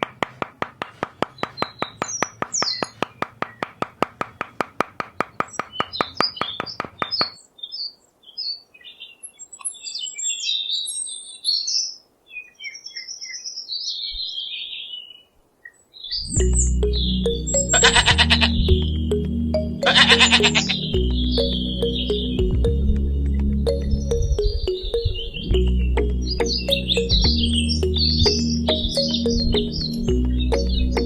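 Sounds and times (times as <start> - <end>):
small birds chirping: 1.2 - 31.0
low hum: 16.4 - 31.0.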